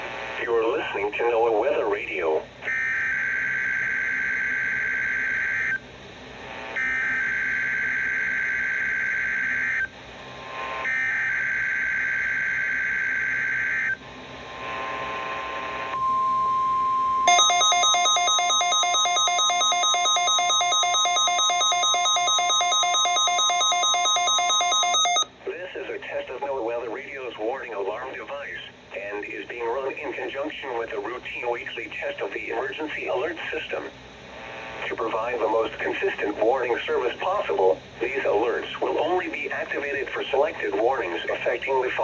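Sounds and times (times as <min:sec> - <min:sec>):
steady alarm tone: 0:02.7 - 0:05.8, 0:06.8 - 0:09.9, 0:10.8 - 0:14.0, 0:15.9 - 0:25.4
rapidly pulsing beep: 0:16.0 - 0:25.3.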